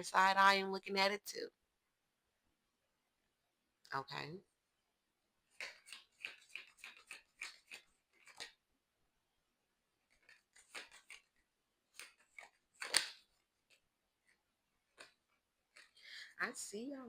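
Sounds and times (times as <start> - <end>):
cards being shuffled: 5.5 - 8.6, 10.0 - 16.0.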